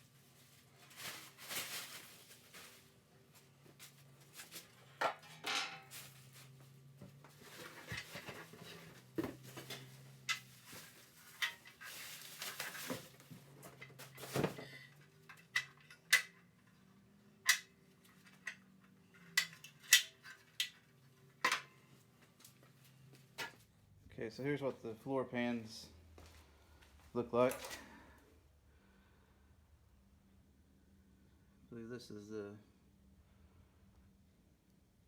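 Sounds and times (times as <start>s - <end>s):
rustling of packaging: 0.0s - 5.0s, 5.8s - 14.6s, 26.2s - 28.1s.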